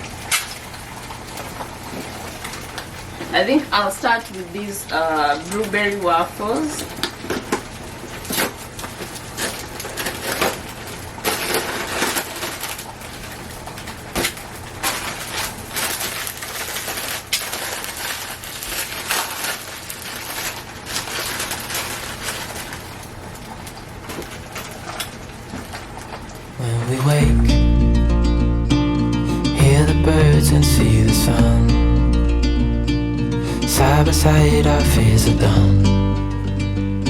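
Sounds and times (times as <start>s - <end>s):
crinkling: 0.0s - 27.4s
low hum: 26.8s - 37.0s.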